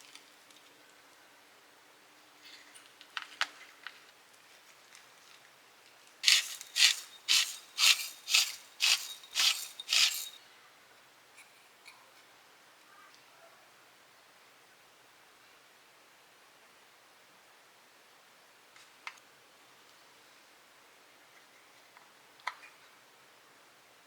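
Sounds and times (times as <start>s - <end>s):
knife cutting food: 6.2s - 10.4s.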